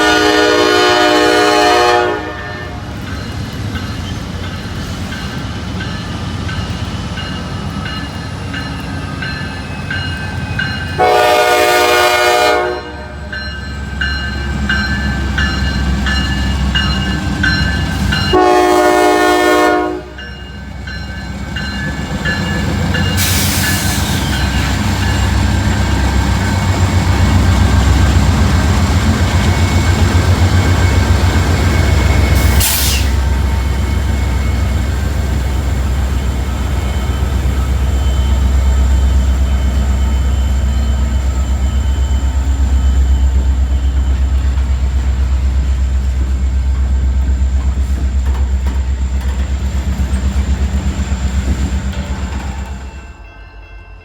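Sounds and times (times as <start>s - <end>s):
diesel locomotive engine drone: 0.0s - 54.0s
loud hiss: 23.0s - 26.2s, 31.2s - 33.9s.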